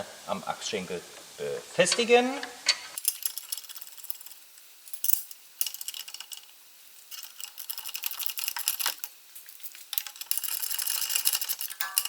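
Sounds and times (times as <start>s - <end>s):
hand ratchet clicking: 3.0s - 12.0s
metal tools clinking: 3.0s - 12.0s.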